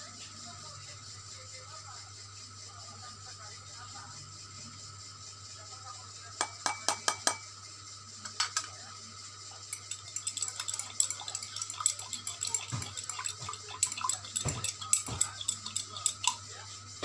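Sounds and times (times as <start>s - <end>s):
steady low hum: 0.4s - 17.0s
metal spoon clinking against container: 9.7s - 16.5s.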